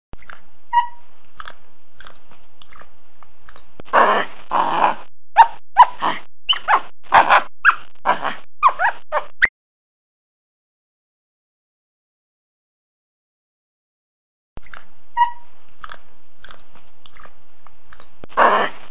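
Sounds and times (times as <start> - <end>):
monkey chirping and screeching: 0.2 - 3.7, 5.4 - 6.9, 7.7 - 9.3, 14.6 - 18.8.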